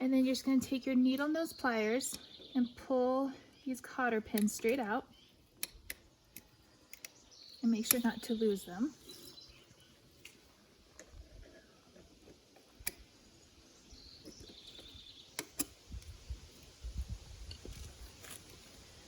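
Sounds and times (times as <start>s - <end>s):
bird chirping: 0.0s - 10.6s, 12.9s - 15.9s
metal clicks of pliers: 4.3s - 4.9s, 5.6s - 7.2s, 7.8s - 8.3s.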